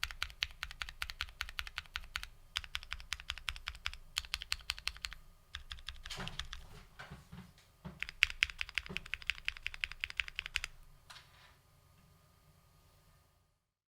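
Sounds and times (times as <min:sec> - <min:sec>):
mechanical keyboard key clacks: 0:08.0 - 0:10.7.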